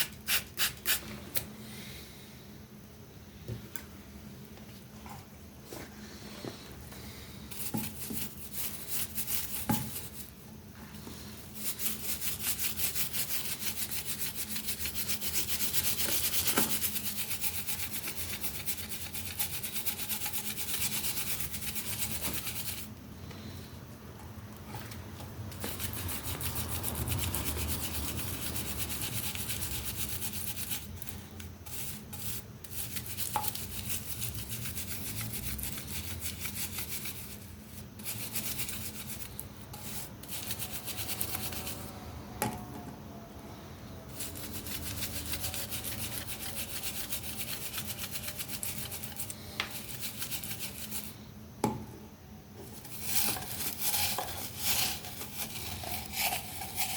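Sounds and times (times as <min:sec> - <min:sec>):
fast scrubbing strokes: 0:44.1 - 0:51.1, 0:52.9 - 0:56.9.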